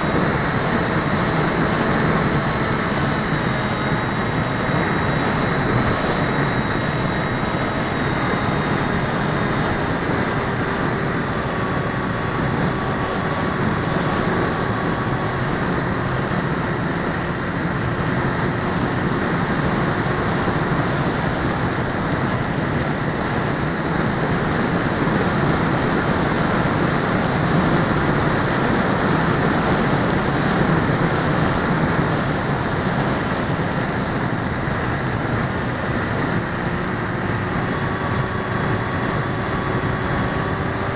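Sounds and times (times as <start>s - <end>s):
electric motors whining: 0.0s - 40.9s.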